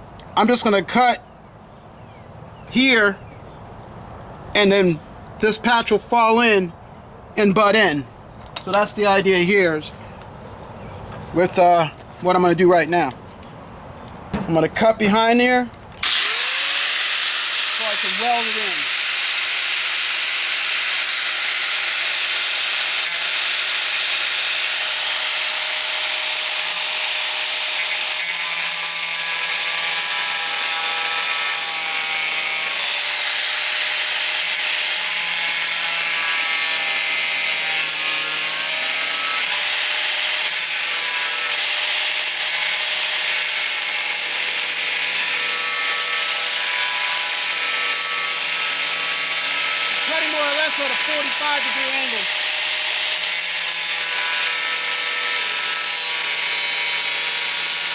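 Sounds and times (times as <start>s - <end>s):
angle grinder cutting metal: 16.0s - 57.9s.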